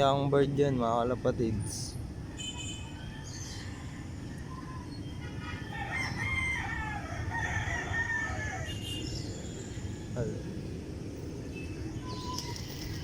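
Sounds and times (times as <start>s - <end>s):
rooster crowing: 5.4s - 8.8s.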